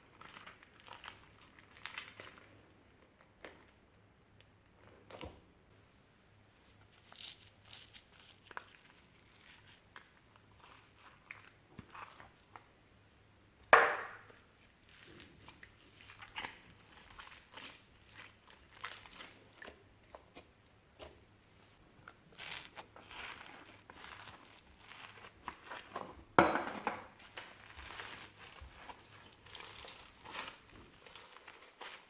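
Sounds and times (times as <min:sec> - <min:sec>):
slime squishing and crackling: 0:00.0 - 0:03.8, 0:06.8 - 0:12.7, 0:13.7 - 0:26.4, 0:27.0 - 0:32.0
loud sharp pop: 0:13.8 - 0:14.2.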